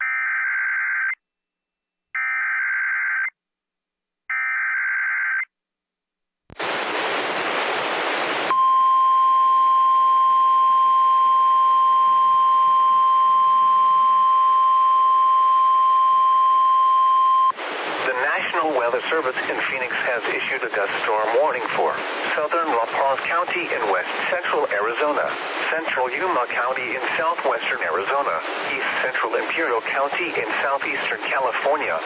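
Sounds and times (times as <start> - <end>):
radio static: 6.5 - 8.5, 17.6 - 32.0.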